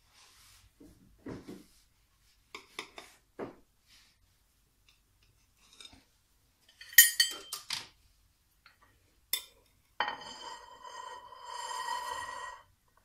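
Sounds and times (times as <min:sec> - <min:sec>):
knife clinking on plate: 0:06.8 - 0:07.7.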